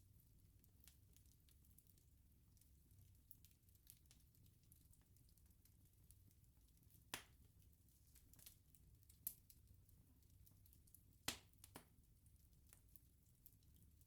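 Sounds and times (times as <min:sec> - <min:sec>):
low rumble of fire burning: 0:00.0 - 0:14.0
bonfire pops and snaps: 0:06.7 - 0:07.4, 0:08.1 - 0:09.6, 0:10.9 - 0:12.0.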